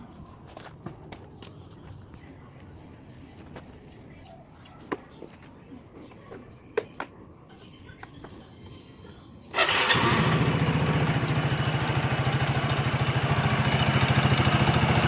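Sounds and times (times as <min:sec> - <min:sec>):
scooter engine starting and idling: 0:09.5 - 0:15.0.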